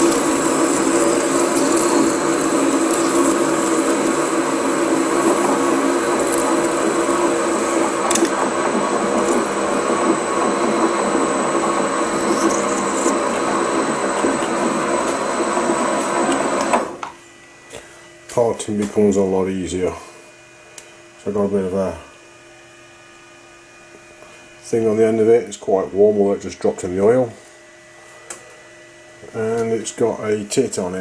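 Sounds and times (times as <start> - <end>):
lathe cutting steel: 0.0 - 17.0.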